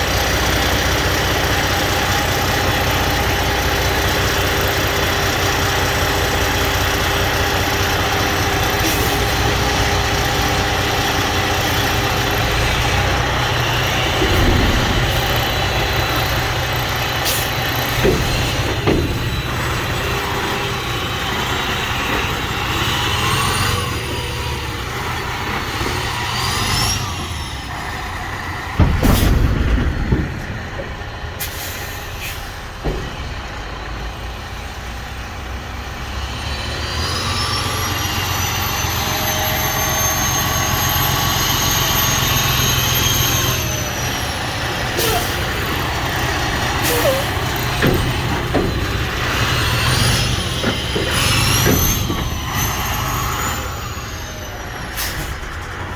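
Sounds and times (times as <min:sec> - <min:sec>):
diesel truck engine running: 0:00.0 - 0:55.9
air brake releasing: 0:08.8 - 0:09.6, 0:13.8 - 0:19.3, 0:31.4 - 0:32.7, 0:43.4 - 0:55.8
high whines: 0:12.6 - 0:20.7.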